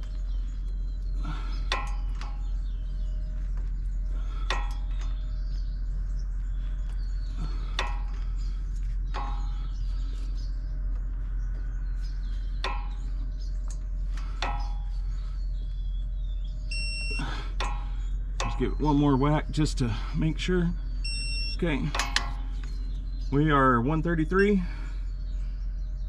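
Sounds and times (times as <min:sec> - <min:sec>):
faint bird chirps: 0:00.0 - 0:26.0
steady low hum: 0:00.0 - 0:26.0
hammer striking metal: 0:04.5 - 0:04.9, 0:09.1 - 0:09.7, 0:12.6 - 0:13.2, 0:14.4 - 0:14.9, 0:17.6 - 0:18.7.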